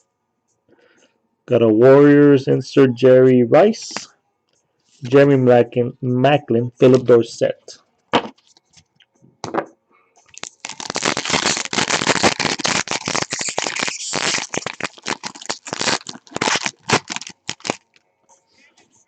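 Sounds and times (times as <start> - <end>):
plastic wrapper crinkling: 10.3 - 18.0.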